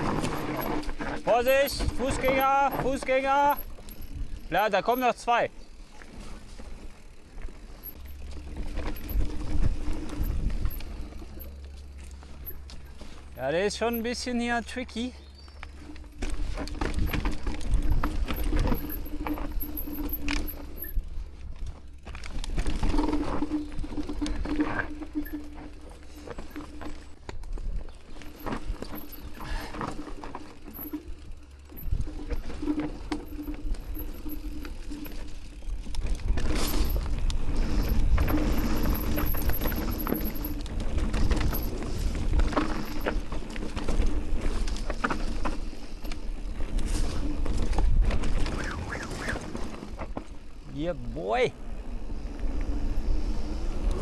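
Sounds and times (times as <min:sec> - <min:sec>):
bike chain rattling: 0:00.0 - 0:54.0
tyres on dirt and rock: 0:00.0 - 0:54.0
knocks and clicks over bumps: 0:15.4 - 0:50.4.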